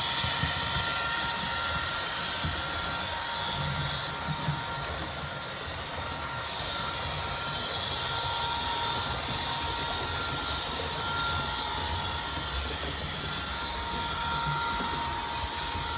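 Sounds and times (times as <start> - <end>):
faint high whine: 0.0 - 15.9.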